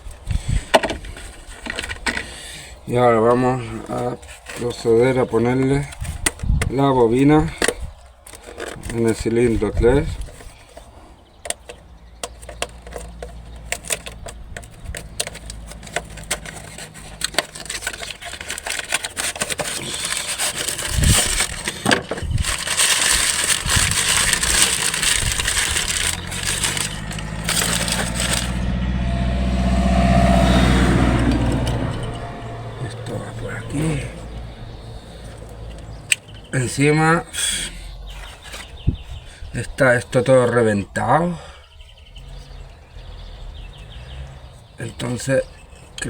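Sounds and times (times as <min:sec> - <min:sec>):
vehicle engine humming: 0:09.6 - 0:46.0
hands clicking and tapping parts: 0:10.2 - 0:28.6.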